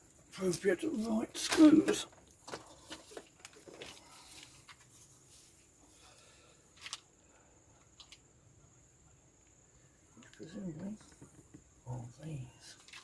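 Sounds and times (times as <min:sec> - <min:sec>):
small screws clicking and rustling: 0:07.8 - 0:08.3.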